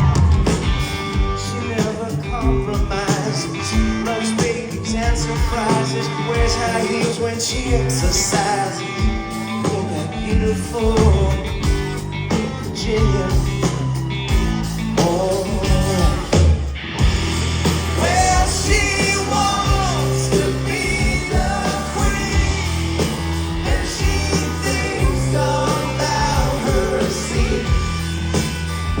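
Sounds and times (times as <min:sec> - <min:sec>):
live rock band playing: 0:00.0 - 0:29.0
person singing: 0:18.0 - 0:28.2.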